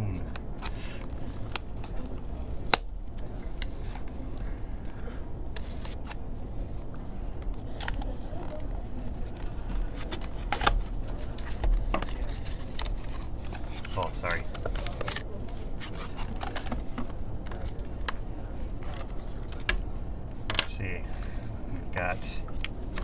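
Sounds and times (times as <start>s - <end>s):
cardboard snapping: 0.6s - 2.9s.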